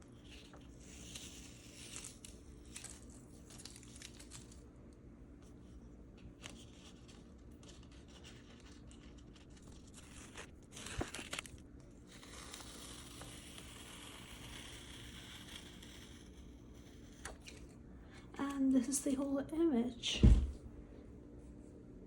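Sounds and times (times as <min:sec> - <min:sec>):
tape peeling off paper: 0:00.2 - 0:04.6, 0:06.3 - 0:17.7
paper crinkling: 0:00.2 - 0:04.7, 0:05.5 - 0:17.7.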